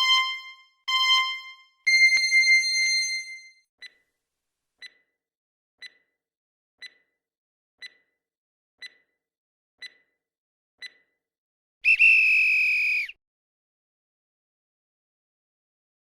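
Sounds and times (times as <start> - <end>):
faint clock ticking: 3.8 - 4.2, 4.8 - 5.2, 5.8 - 6.2, 6.8 - 7.2, 7.8 - 8.2, 8.8 - 9.2, 9.8 - 10.2, 10.8 - 11.2.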